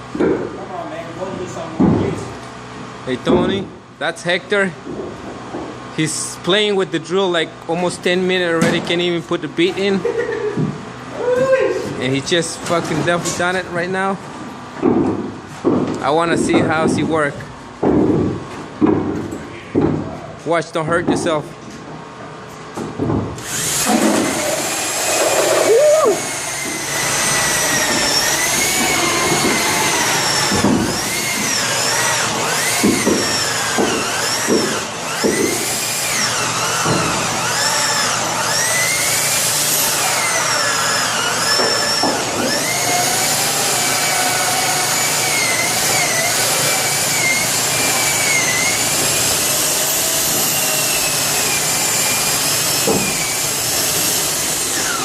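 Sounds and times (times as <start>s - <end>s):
power drill whining: 23.4s - 55.0s.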